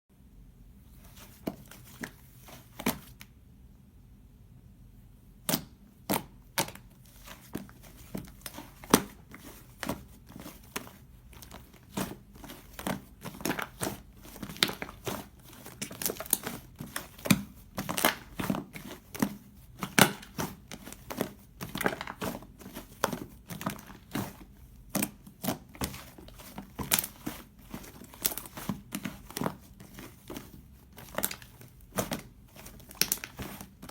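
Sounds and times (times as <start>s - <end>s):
slime crackling and popping: 11.4s - 24.2s, 24.9s - 33.9s.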